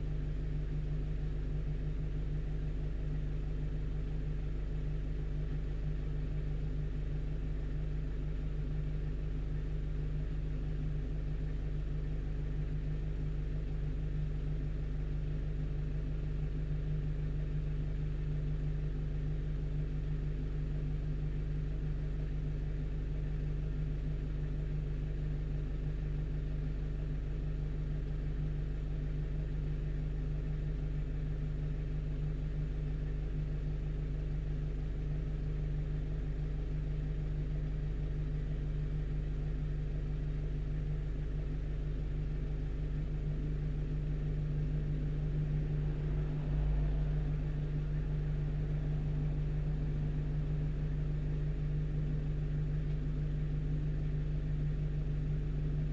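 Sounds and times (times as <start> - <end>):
truck engine running: 43.5 - 54.2.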